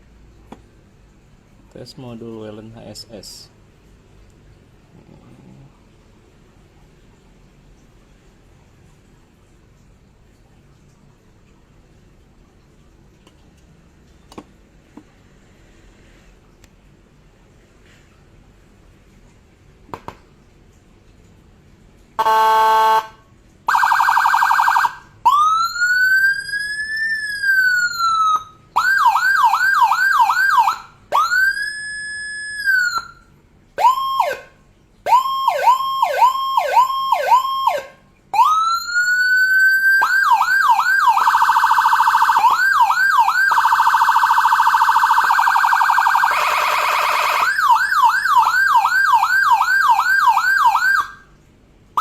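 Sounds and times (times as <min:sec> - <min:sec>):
electronic siren wail and yelp: 0:22.2 - 0:23.1, 0:23.7 - 0:51.3
buzzy horn blast: 0:22.2 - 0:23.2.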